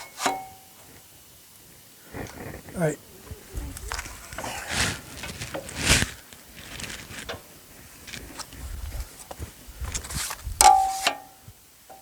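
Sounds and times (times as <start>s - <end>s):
loud scrape: 2.1s - 7.4s.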